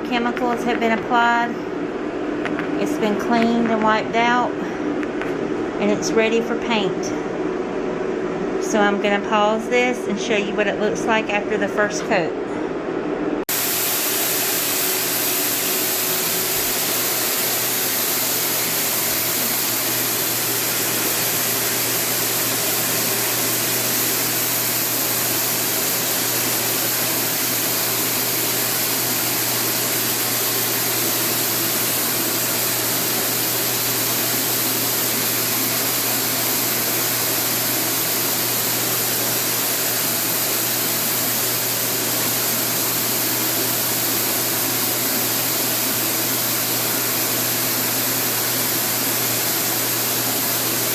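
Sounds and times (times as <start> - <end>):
blower motor rushing air: 12.4 - 50.9.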